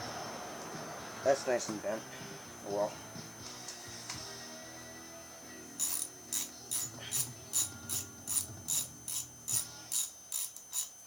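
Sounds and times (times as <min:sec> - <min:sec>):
socket ratchet clicking: 0:05.8 - 0:11.0.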